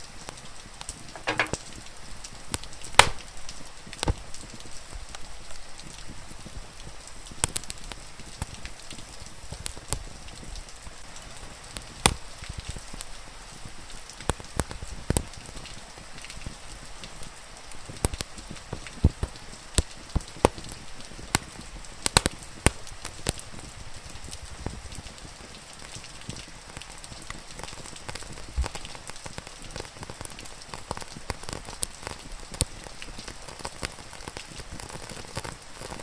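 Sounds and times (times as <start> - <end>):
rain falling: 0.0 - 36.0
wood fire crackling: 0.0 - 36.0
fire pops: 0.8 - 4.6, 7.3 - 10.5, 11.8 - 12.8, 17.9 - 23.6, 25.8 - 36.0.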